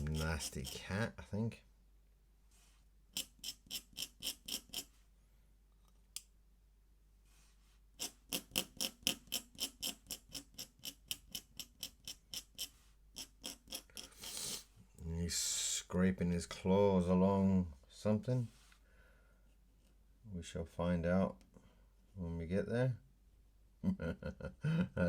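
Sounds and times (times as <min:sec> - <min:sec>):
pen scratching on paper: 0:00.0 - 0:00.8, 0:03.2 - 0:04.9, 0:08.0 - 0:14.6.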